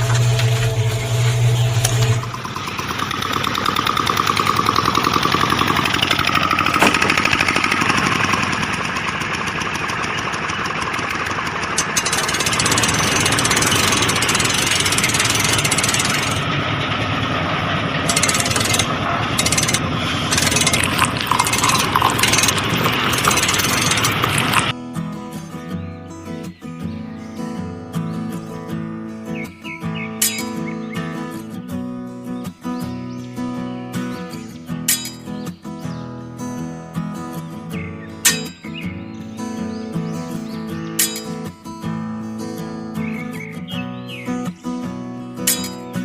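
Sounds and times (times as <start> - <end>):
small motor rattling: 0.0 - 24.8.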